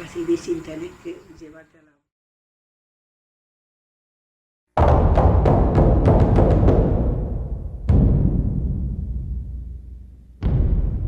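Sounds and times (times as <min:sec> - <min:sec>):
dramatic timpani music sting: 0:04.8 - 0:11.0.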